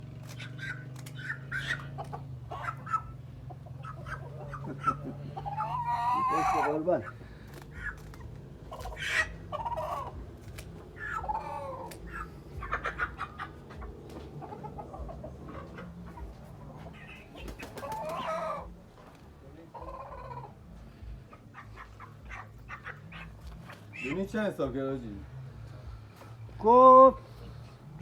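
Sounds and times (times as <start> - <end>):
rustles: 0.0 - 2.9, 6.6 - 28.0
chickens clucking and squawking: 0.0 - 28.0
sharp clicks: 0.2 - 1.2, 10.4 - 10.8.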